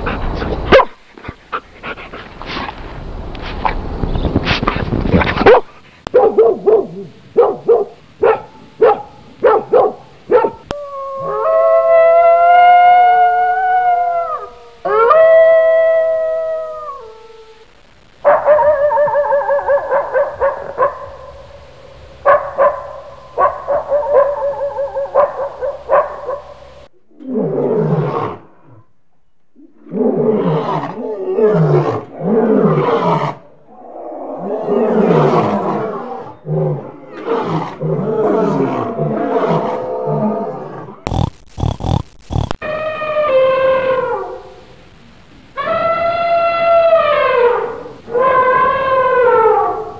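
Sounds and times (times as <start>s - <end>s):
dogs yelping barks: 0.0s - 1.9s, 5.3s - 10.8s, 18.2s - 21.4s, 22.2s - 26.7s
wolves howling: 10.4s - 17.6s, 18.3s - 21.4s, 22.4s - 26.7s, 42.6s - 44.6s, 45.6s - 49.9s.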